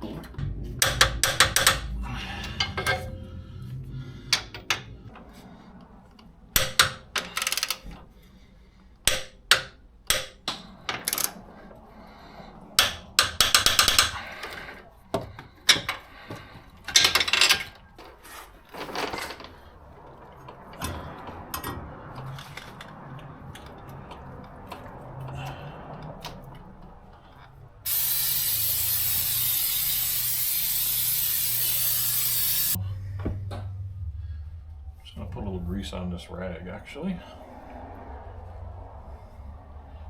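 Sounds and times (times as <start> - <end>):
torque wrench ratcheting: 0.8 - 1.9, 12.8 - 14.7, 27.9 - 32.8
sharp metallic clanks: 0.8 - 5.1.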